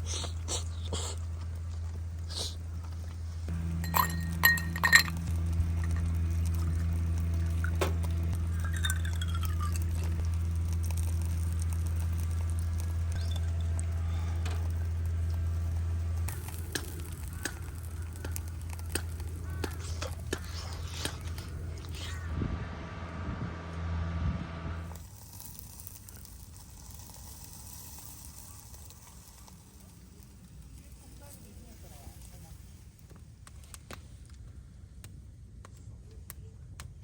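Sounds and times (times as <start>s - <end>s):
steady low hum: 0.0s - 36.2s
small clicks: 3.5s - 21.5s
glass clinking: 3.6s - 6.0s, 8.4s - 10.1s.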